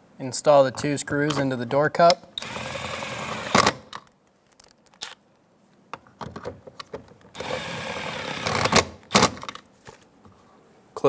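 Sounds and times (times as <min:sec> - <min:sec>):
power driver whining: 0:02.4 - 0:03.9, 0:07.4 - 0:09.4.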